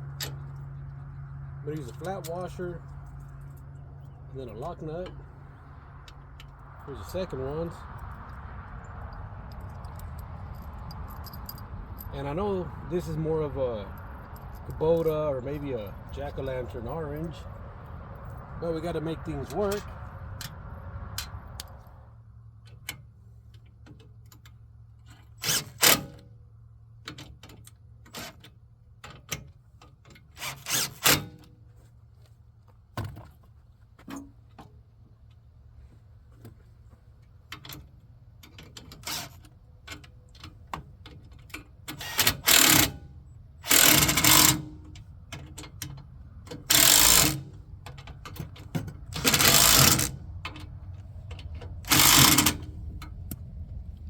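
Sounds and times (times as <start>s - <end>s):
metal clicks and clinks of tools: 9.1s - 12.3s, 13.9s - 15.9s
power tool spinning: 49.2s - 50.2s, 51.9s - 52.5s.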